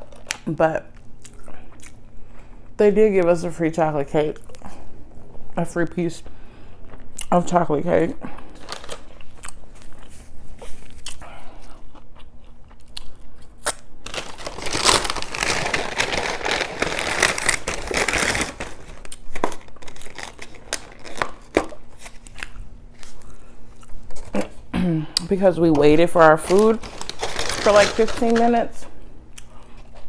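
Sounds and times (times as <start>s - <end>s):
biting and chewing food: 8.4s - 24.6s
food packaging crinkling: 8.6s - 11.2s, 13.6s - 24.4s, 26.0s - 29.6s.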